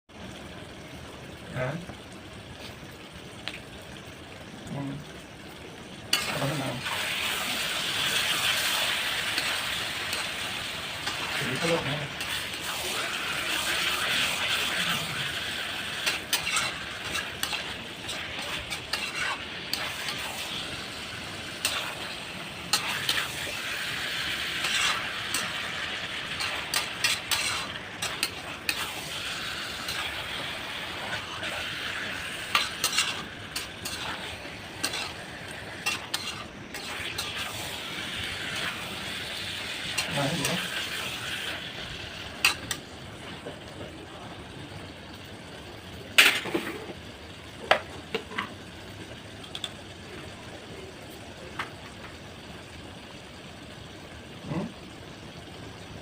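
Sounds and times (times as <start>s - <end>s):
food sizzling in a pan: 0.1s - 56.0s
utensil scraping a pan: 16.0s - 20.5s, 24.6s - 25.6s, 26.4s - 29.0s, 29.8s - 35.2s, 35.8s - 37.5s.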